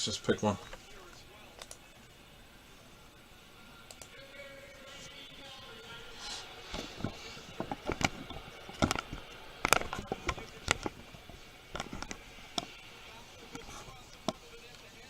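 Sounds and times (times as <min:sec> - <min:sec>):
card packs handled on a table: 0:06.2 - 0:12.8.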